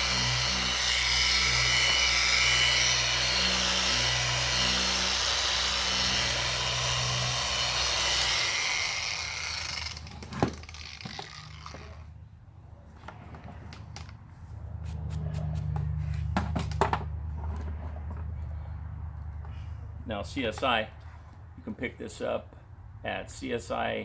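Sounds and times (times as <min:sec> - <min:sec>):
electric polisher whining: 0:00.0 - 0:12.0.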